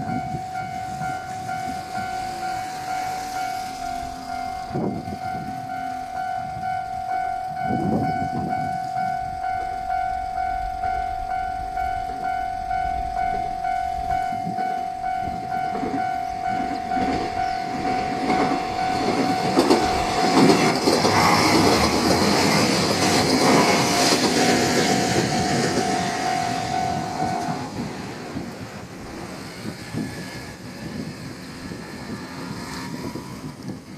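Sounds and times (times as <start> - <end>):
level crossing alarm ringing: 0.0 - 28.5
diesel railcar engine: 0.0 - 33.9
train wheels clacking over rail joints: 7.8 - 33.9.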